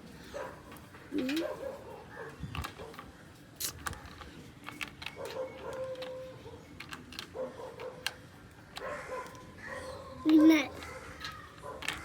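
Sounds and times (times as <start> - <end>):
plastic game pieces clicking: 2.5 - 9.5, 10.2 - 12.0.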